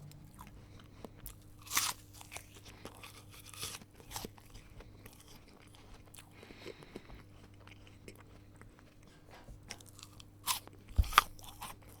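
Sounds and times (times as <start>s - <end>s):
person chewing apple: 0.0s - 12.0s
loud apple bite crunch: 0.3s - 6.3s, 9.8s - 12.0s.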